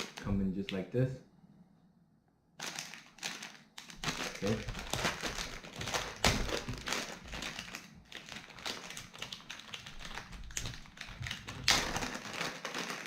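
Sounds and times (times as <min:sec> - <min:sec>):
plastic packaging crackles: 0:00.0 - 0:00.8, 0:02.6 - 0:13.0
plastic packaging clicks and taps: 0:02.6 - 0:13.0.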